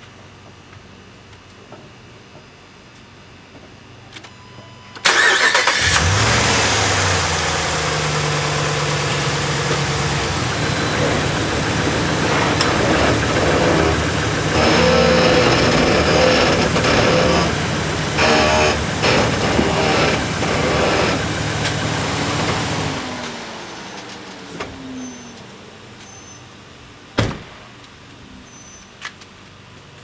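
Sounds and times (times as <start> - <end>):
engine idling: 5.0 - 24.5
truck engine cranking and starting: 5.0 - 25.3.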